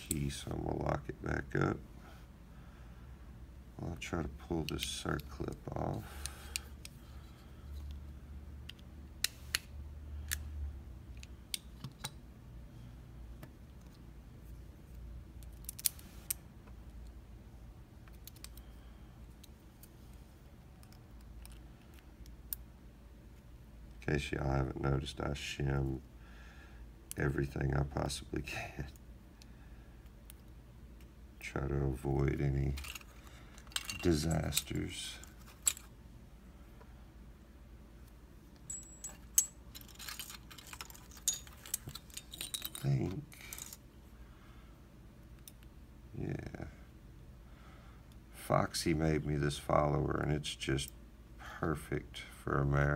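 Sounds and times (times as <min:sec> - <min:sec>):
padlock parts clicking: 0:11.1 - 0:12.2, 0:15.4 - 0:16.4, 0:18.0 - 0:18.7, 0:38.6 - 0:43.8.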